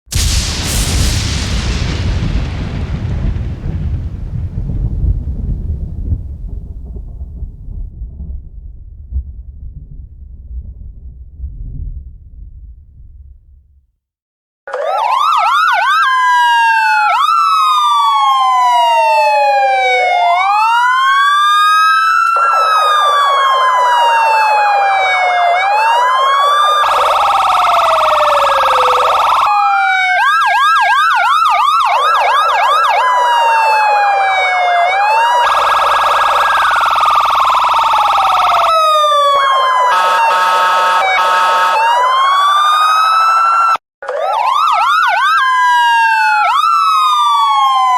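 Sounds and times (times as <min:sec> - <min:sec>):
electronic siren wailing and yelping: 0:14.7 - 0:47.9.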